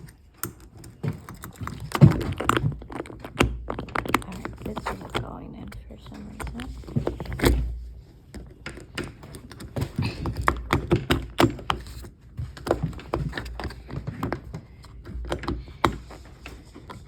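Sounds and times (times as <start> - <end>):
metal lock parts clicking: 0.0 - 7.8.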